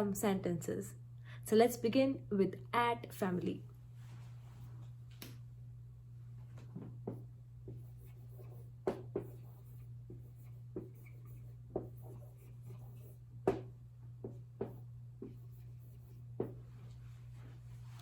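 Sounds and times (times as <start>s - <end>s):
low electrical hum: 0.0s - 18.0s
pen scratching on paper: 7.7s - 13.6s, 14.2s - 16.6s.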